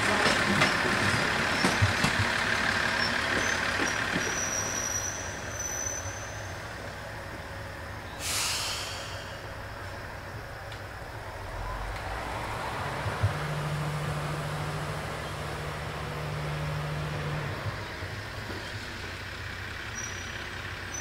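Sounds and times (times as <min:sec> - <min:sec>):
diesel railcar running slowly: 0:00.0 - 0:21.0
thin high squeal: 0:04.3 - 0:06.5
air brake hiss: 0:08.1 - 0:09.6.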